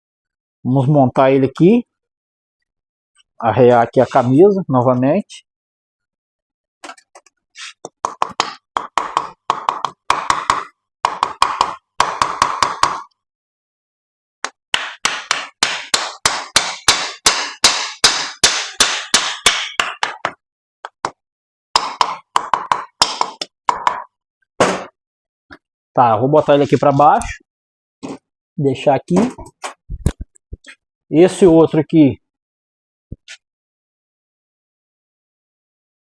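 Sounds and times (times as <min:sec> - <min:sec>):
hammer striking metal: 0:14.8 - 0:20.3.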